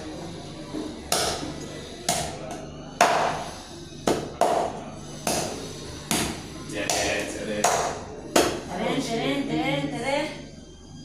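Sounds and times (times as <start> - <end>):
knife chopping meat and bone: 1.1 - 3.5, 4.1 - 8.7.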